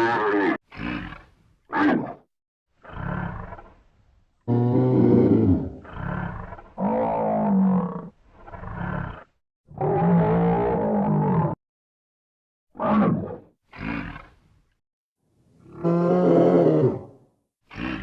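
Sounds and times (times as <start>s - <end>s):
buffalo grunts and bellows: 0.0s - 2.2s, 13.7s - 14.4s, 17.7s - 18.0s.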